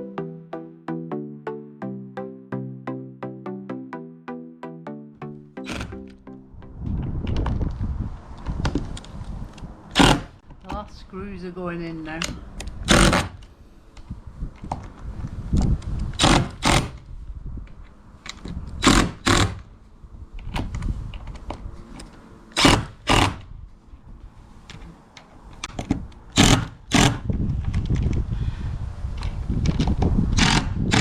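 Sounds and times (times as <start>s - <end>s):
screws driven into metal roof: 9.9s - 10.4s, 12.9s - 13.5s, 16.2s - 17.0s, 18.8s - 19.6s, 22.5s - 23.4s, 26.4s - 27.2s, 30.4s - 31.0s.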